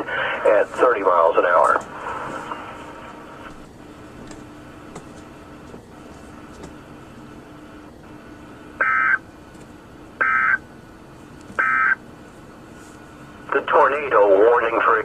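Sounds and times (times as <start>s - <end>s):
radio hiss: 0.0s - 3.6s, 13.2s - 15.0s
faint steady hum: 0.0s - 15.0s.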